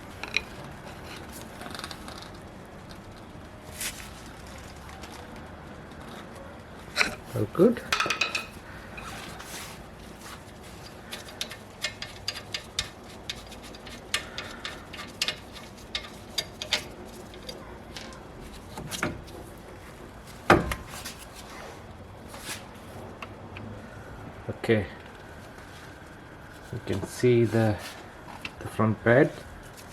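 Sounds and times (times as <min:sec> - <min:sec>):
metallic clicks and scrapes: 0:00.1 - 0:03.3, 0:06.9 - 0:19.1.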